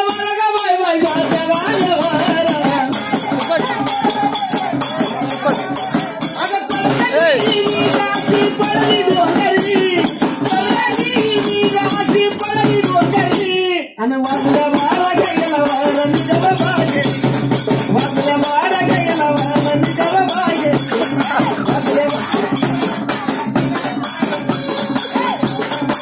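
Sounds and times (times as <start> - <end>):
jingling hand percussion: 0.0 - 26.0
solo voice singing: 17.9 - 22.9.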